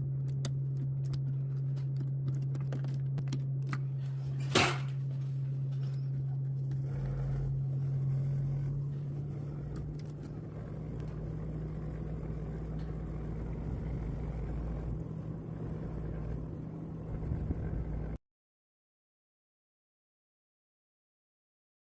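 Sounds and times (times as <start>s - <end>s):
air conditioner humming: 0.0s - 18.2s
deep rumble: 0.0s - 18.2s.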